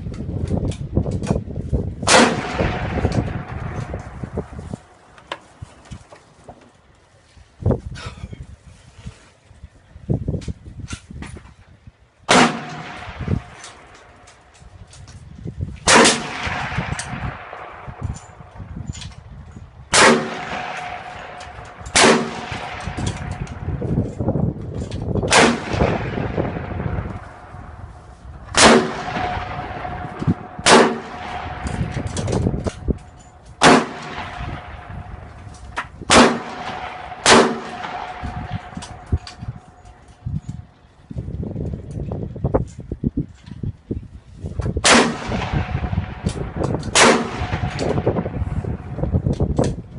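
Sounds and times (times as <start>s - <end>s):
gusting wind noise: 0.0s - 49.9s
loud bangs with ringing tail: 2.0s - 4.6s, 12.3s - 14.0s, 15.9s - 18.5s, 19.9s - 23.8s, 25.3s - 27.8s, 28.5s - 35.4s, 36.0s - 40.0s, 44.8s - 49.0s
loud metallic bangs with ringing: 12.3s - 14.0s, 28.6s - 35.3s, 36.0s - 40.1s.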